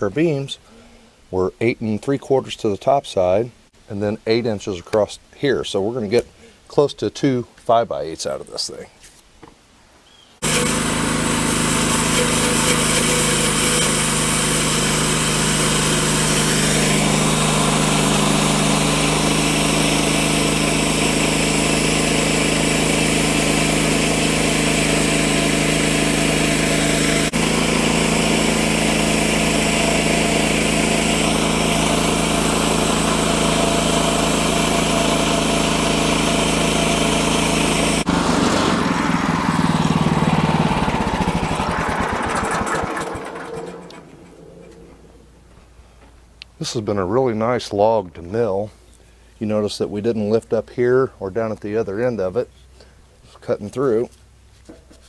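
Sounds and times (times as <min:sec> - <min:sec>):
band sawmill cutting log: 0:10.4 - 0:45.4.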